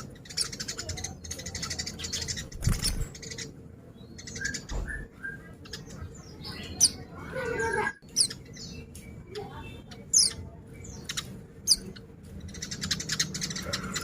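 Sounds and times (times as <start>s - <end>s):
bird chirping: 0.0s - 14.0s
small bird clicks: 2.5s - 3.1s.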